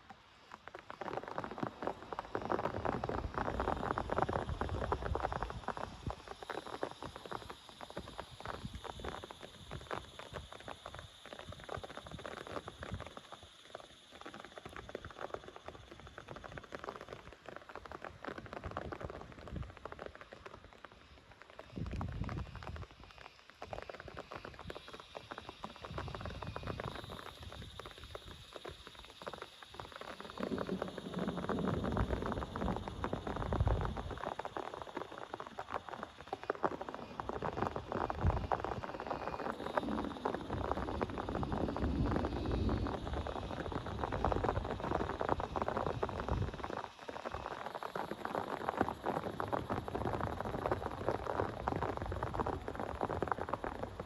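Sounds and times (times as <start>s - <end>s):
raindrops on a hard surface: 0.0s - 54.0s.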